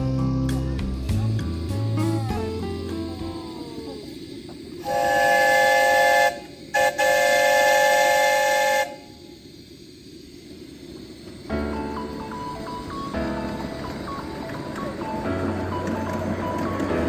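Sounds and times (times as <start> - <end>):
train whistle blasts: 4.8 - 9.3
steady low noise: 9.2 - 17.0.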